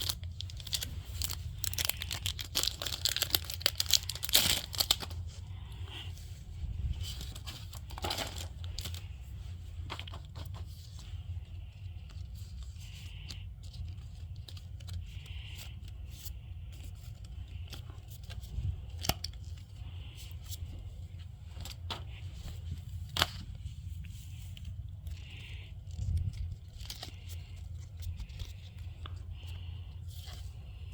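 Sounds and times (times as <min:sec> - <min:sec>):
packaging being torn open: 0:00.0 - 0:05.2.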